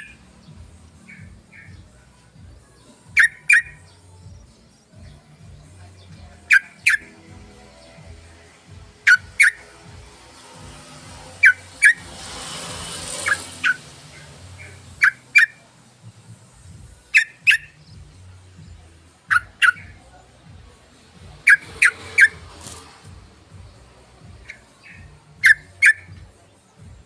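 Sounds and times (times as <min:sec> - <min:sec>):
bird calling sharp notes: 0:03.1 - 0:03.9, 0:06.4 - 0:07.9, 0:09.0 - 0:09.8, 0:11.2 - 0:12.1, 0:13.0 - 0:15.6, 0:17.1 - 0:17.8, 0:19.2 - 0:20.0, 0:21.4 - 0:22.9, 0:24.5 - 0:26.2.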